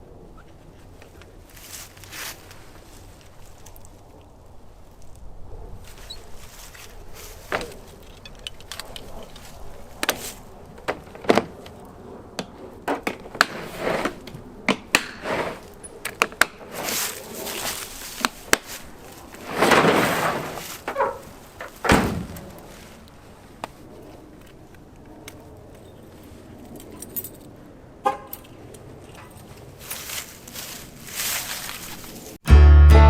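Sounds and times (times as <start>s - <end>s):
rustling swishes: 16.7s - 24.3s, 29.6s - 32.4s
heavy thump: 21.9s - 22.6s.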